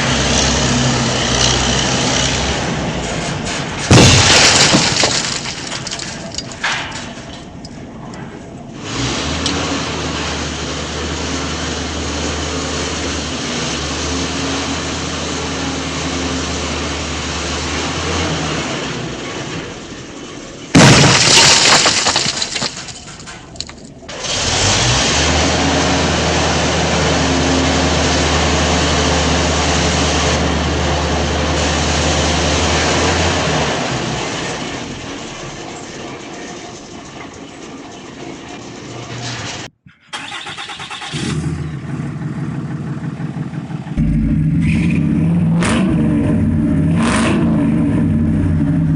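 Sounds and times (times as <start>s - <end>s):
heavy vehicle engine running: 0.0s - 48.9s
loud crash: 3.1s - 7.4s, 20.7s - 23.7s.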